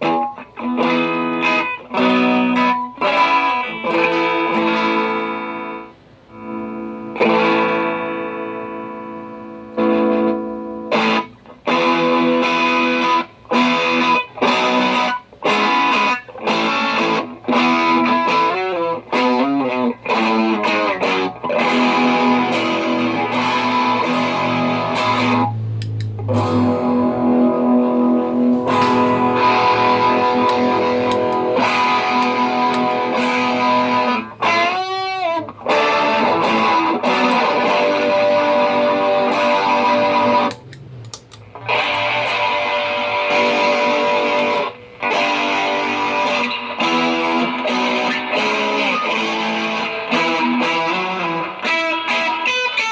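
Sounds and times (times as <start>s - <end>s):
distorted electric guitar chords: 0.0s - 52.9s.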